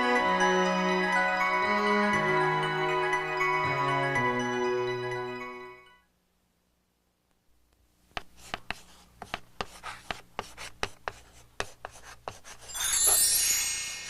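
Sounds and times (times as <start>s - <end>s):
high shimmering chime: 12.7s - 14.0s.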